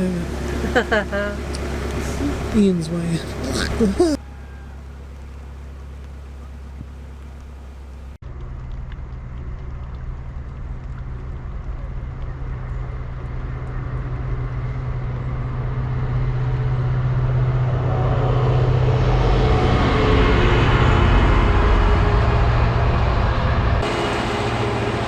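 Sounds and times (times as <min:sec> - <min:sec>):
diesel engine humming: 0:00.0 - 0:25.0
passing train rushing: 0:17.0 - 0:25.0.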